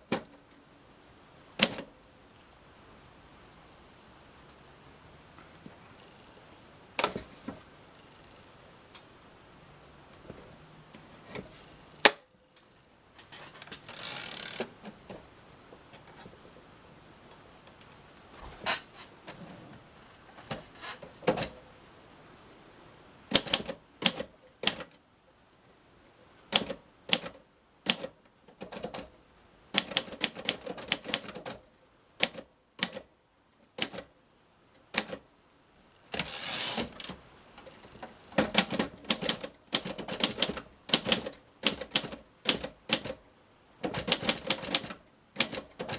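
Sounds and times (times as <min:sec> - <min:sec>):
typewriter key strikes: 0:01.6 - 0:01.9, 0:23.3 - 0:25.0, 0:26.5 - 0:29.1, 0:29.8 - 0:31.6, 0:32.2 - 0:33.1, 0:34.9 - 0:35.2, 0:38.4 - 0:43.2, 0:43.8 - 0:45.9
typewriter carriage rasping slide: 0:13.2 - 0:15.0, 0:20.4 - 0:21.6, 0:36.1 - 0:37.2.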